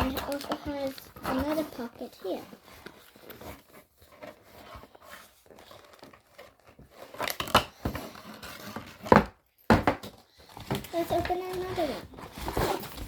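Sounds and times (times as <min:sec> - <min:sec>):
packaging crinkling: 0:00.0 - 0:07.6
bag rustling: 0:10.9 - 0:13.0.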